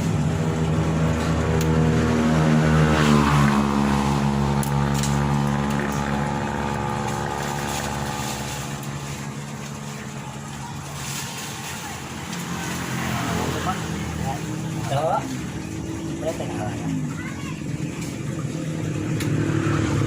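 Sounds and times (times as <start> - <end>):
vehicle engine passing by: 0.0 - 20.0.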